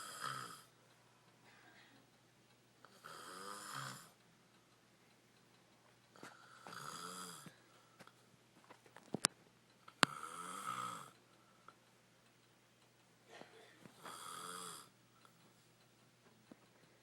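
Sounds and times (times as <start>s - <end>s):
heavy rasping snoring: 0.0s - 0.7s, 2.9s - 4.2s, 6.4s - 7.5s, 10.1s - 11.1s, 14.0s - 14.9s.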